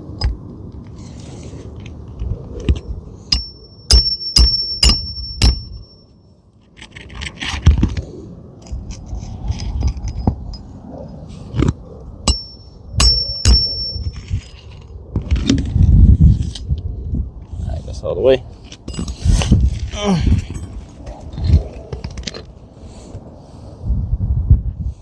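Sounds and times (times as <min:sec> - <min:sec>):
hammer ringing on nails: 0:03.3 - 0:06.0, 0:12.3 - 0:14.1.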